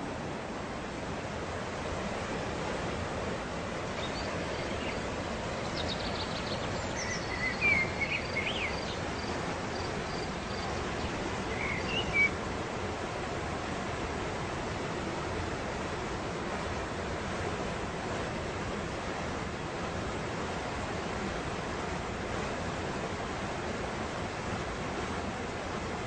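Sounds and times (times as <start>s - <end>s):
waterfall rushing: 0.0s - 26.0s
birds chirping: 4.0s - 12.3s.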